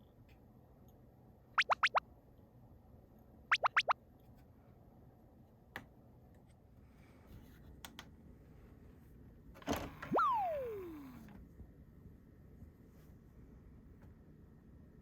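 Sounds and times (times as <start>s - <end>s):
falling whistle-like sweeps: 10.1s - 11.1s
rising and sliding tone: 10.1s - 11.1s.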